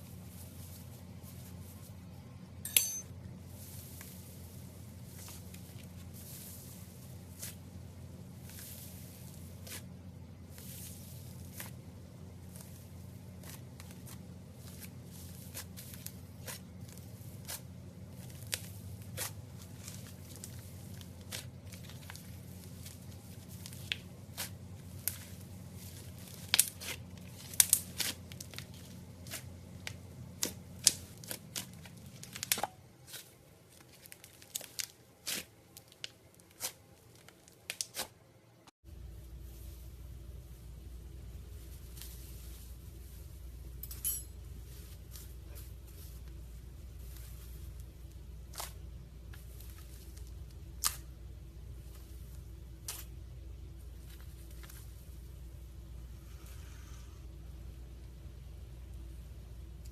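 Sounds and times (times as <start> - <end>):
low steady hum: 0.0 - 59.9
slime popping and crackling: 12.5 - 33.2, 33.8 - 38.2.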